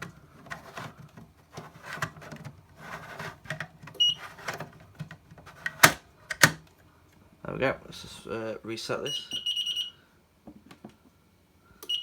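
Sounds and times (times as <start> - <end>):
plastic scraping and rubbing: 0.0 - 6.6.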